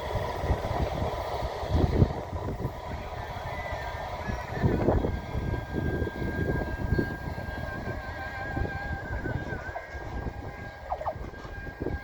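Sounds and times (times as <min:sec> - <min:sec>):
freight train rumbling past: 0:00.0 - 0:12.0
wheels clanking on rails: 0:00.0 - 0:12.0
faint high squeal: 0:03.2 - 0:12.0.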